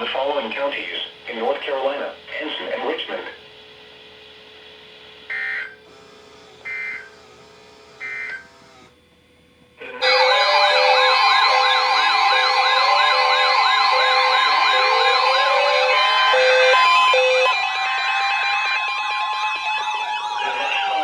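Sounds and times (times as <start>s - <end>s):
electronic siren alarm wailing: 5.2s - 5.8s, 6.6s - 7.2s, 8.0s - 8.7s, 9.8s - 21.0s
buzzy digital data chirps: 10.5s - 17.5s.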